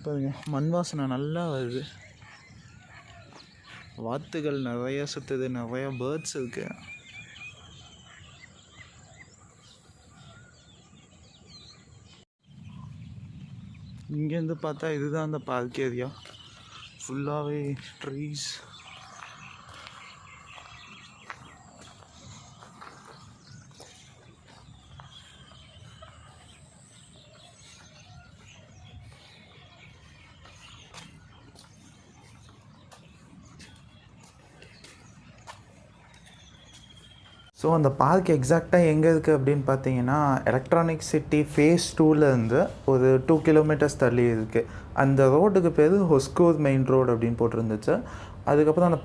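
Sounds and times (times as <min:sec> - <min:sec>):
birds chirping: 0:00.0 - 0:49.0
low outdoor rumble: 0:12.4 - 0:31.4.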